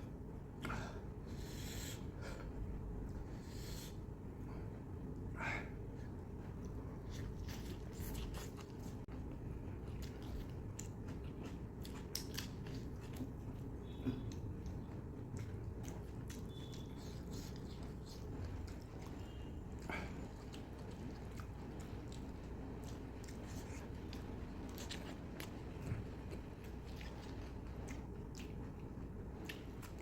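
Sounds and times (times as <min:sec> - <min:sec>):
steady low hum: 0:00.0 - 0:30.0
chewing and biting: 0:06.3 - 0:30.0.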